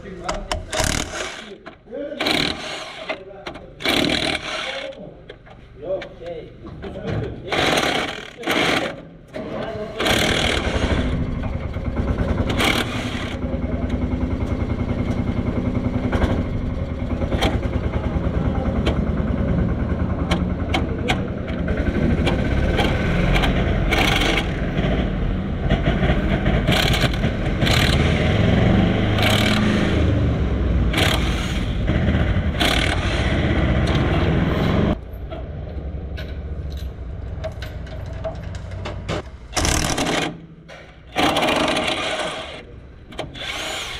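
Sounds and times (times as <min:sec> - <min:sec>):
loud metallic clicks and scraping: 0:00.2 - 0:06.2, 0:07.4 - 0:15.4, 0:20.2 - 0:30.2, 0:30.9 - 0:43.9
motor running steadily: 0:10.0 - 0:34.6.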